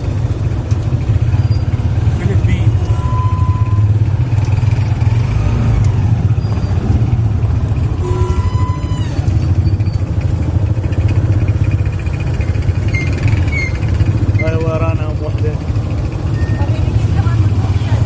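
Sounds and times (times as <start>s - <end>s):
high-pitched squeal: 7.9s - 10.0s.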